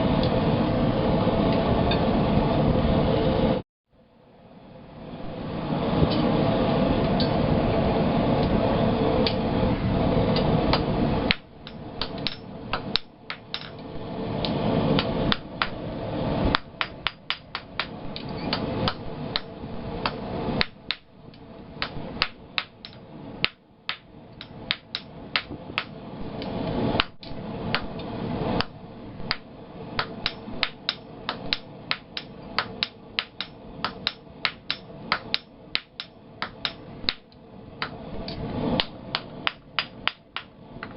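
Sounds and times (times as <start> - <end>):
loud steady rushing noise: 4.6 - 40.9
hammer striking steel on anvil: 10.7 - 13.8, 16.5 - 21.1, 21.8 - 26.0, 30.0 - 37.2, 38.8 - 40.5.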